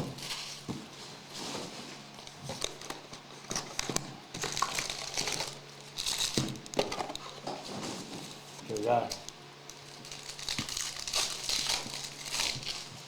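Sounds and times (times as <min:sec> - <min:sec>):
plastic wrapping crinkling and tearing: 0:02.2 - 0:07.6, 0:08.6 - 0:13.0.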